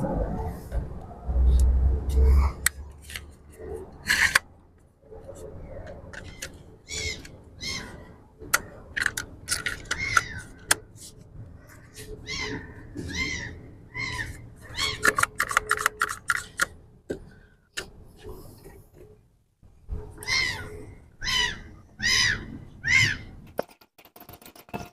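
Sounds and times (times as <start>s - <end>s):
animal calling: 12.0s - 15.4s, 20.2s - 23.3s
sharp clicks and knocks: 15.0s - 18.0s, 23.4s - 24.9s.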